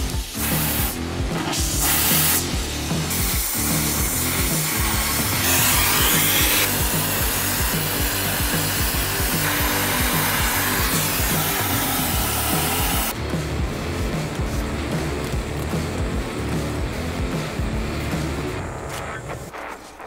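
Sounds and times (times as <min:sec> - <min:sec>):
power tool grinding: 0:00.0 - 0:13.2
music with steady beat: 0:00.0 - 0:20.0.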